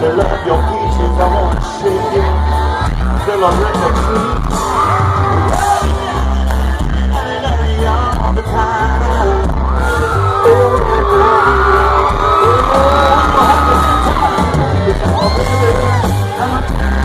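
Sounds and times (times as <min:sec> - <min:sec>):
heavy bass line: 0:00.0 - 0:17.0
live country band playing: 0:00.0 - 0:17.0
crowd cheering and whooping: 0:03.6 - 0:06.8, 0:09.4 - 0:17.0.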